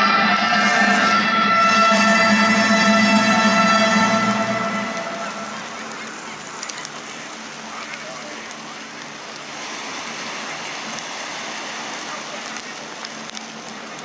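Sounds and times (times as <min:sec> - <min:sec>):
bonfire crackling: 0:00.0 - 0:14.0
fire snapping: 0:05.8 - 0:09.6, 0:11.9 - 0:14.0.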